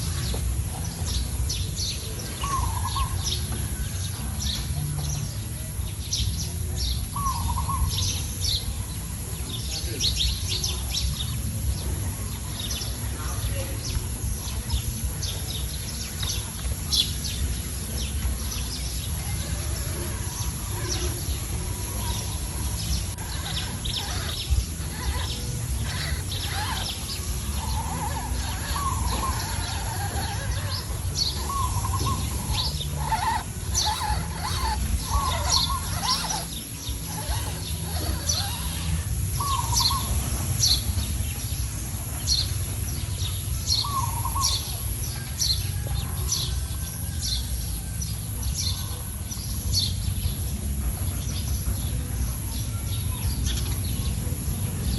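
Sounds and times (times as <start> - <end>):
wild birds chirping: 0.0 - 54.9
wavering lower bird calls: 19.2 - 40.9.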